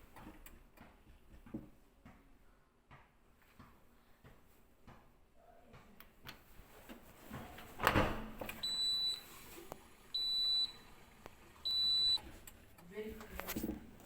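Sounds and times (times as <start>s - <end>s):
dishwasher beeps: 8.5s - 9.3s, 10.1s - 10.9s, 11.6s - 12.3s.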